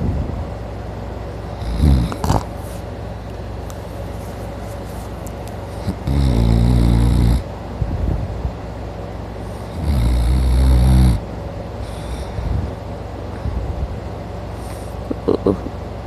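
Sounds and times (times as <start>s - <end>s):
man snoring loudly: 1.6s - 2.5s, 5.8s - 7.5s, 9.7s - 11.2s
quiet breathing: 11.8s - 12.8s.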